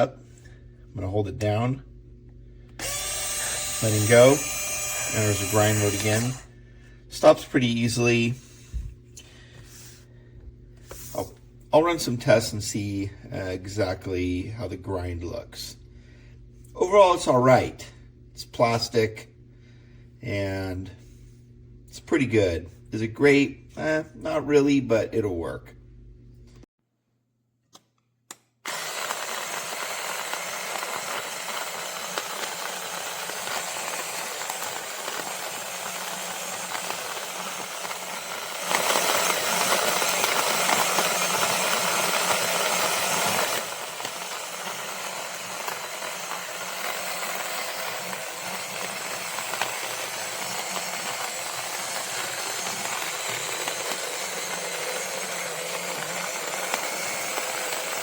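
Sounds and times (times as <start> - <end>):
coffee grinder motor running: 2.6 - 10.0, 28.6 - 58.0.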